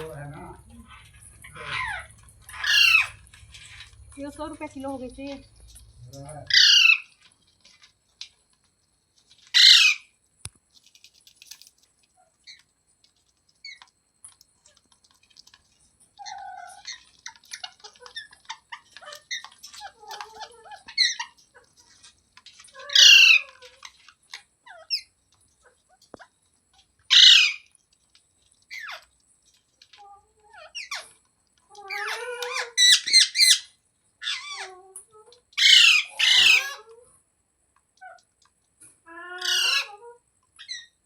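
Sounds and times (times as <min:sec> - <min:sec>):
parrot squawking: 0:00.0 - 0:04.0, 0:06.4 - 0:07.2, 0:09.5 - 0:10.1, 0:16.2 - 0:24.1, 0:27.1 - 0:27.7, 0:30.0 - 0:34.8, 0:35.5 - 0:36.9, 0:39.1 - 0:41.0
parrot chirping and chattering: 0:00.0 - 0:08.5, 0:09.2 - 0:10.2, 0:10.8 - 0:37.0, 0:38.0 - 0:41.0.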